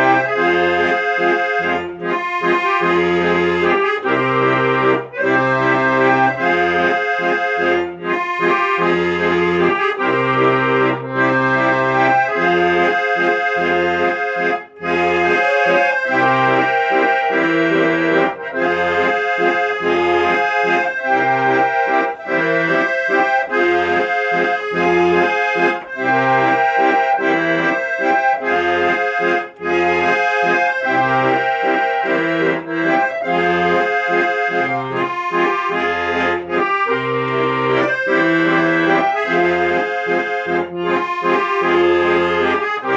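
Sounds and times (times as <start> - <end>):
accordion melody: 0.0 - 42.9.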